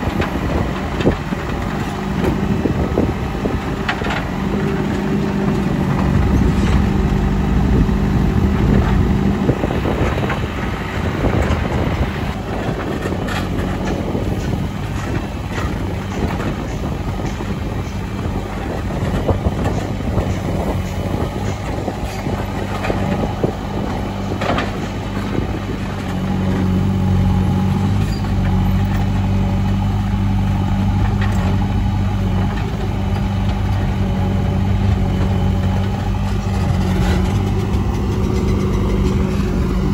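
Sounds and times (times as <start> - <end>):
diesel engine running: 0.0 - 39.9
sharp clanks and knocks: 35.2 - 39.9.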